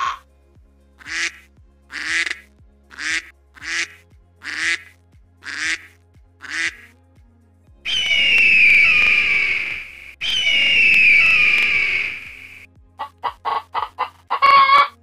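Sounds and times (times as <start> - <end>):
soft background music: 0.0 - 15.0
duck quacking: 1.0 - 6.9, 11.8 - 15.0.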